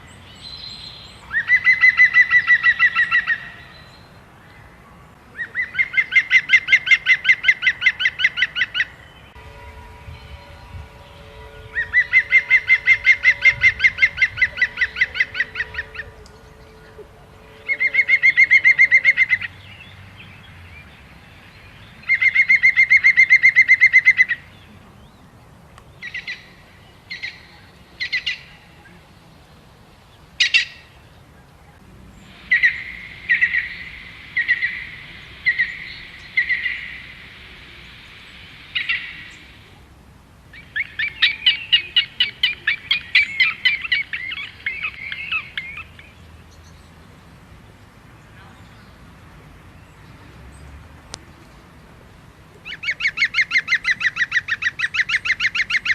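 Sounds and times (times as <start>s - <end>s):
bird calling in fast trills: 0.0s - 4.1s, 5.4s - 19.9s, 22.0s - 24.5s, 32.3s - 39.8s, 40.5s - 46.1s, 52.6s - 55.9s.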